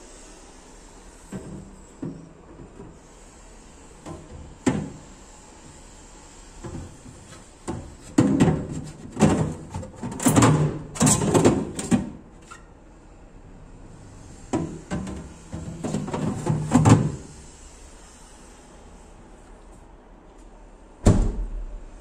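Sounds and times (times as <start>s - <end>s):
cabinet doors opening and shutting: 7.7s - 12.2s, 14.6s - 17.3s
thumps and rattles: 7.7s - 12.2s.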